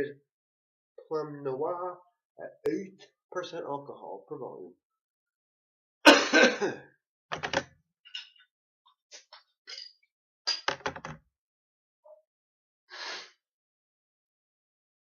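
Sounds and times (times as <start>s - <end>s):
man coughing: 6.1s - 6.8s.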